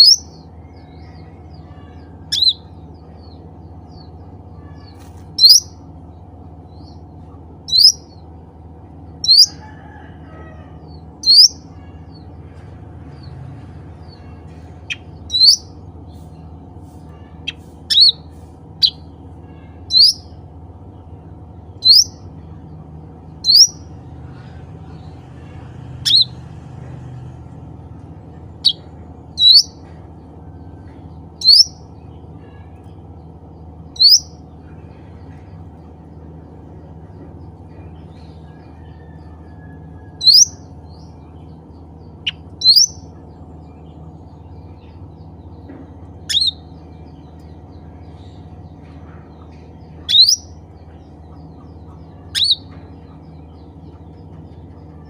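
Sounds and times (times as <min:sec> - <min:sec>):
steady low hum: 0:00.0 - 0:55.0
bulbul sharp calls: 0:31.4 - 0:31.8, 0:46.2 - 0:46.6, 0:52.1 - 0:52.7.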